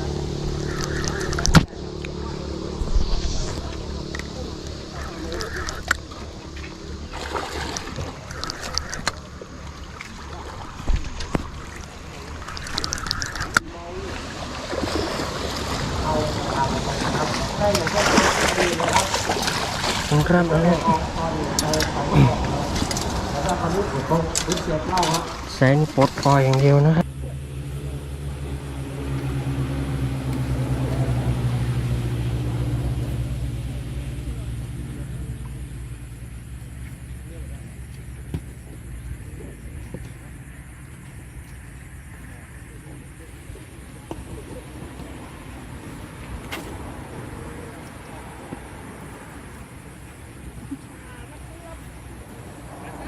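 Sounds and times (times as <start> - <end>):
water splashing and sloshing: 0.0 - 27.0, 35.8 - 53.0
engine humming: 0.0 - 53.0
sharp clicks: 12.5 - 13.6.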